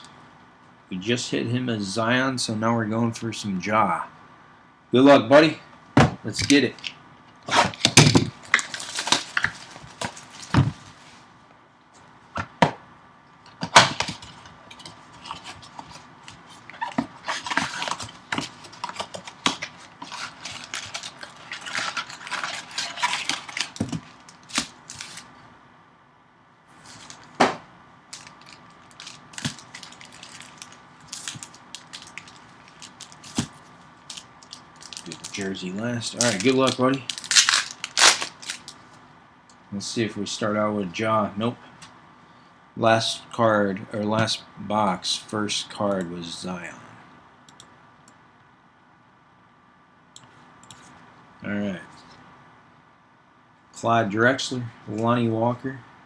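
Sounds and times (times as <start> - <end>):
plastic wrappers crinkling: 7.7 - 11.0, 13.8 - 25.4, 26.8 - 27.4, 28.1 - 39.0.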